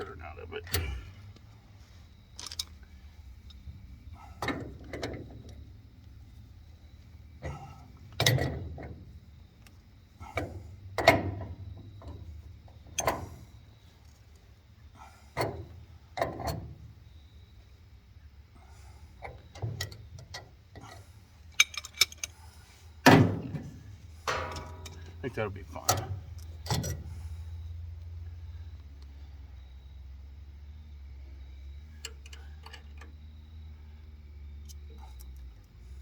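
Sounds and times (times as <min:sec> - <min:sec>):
low steady hum: 0:00.0 - 0:20.4, 0:21.0 - 0:36.0
wrench clanking on metal pipe: 0:24.3 - 0:25.2.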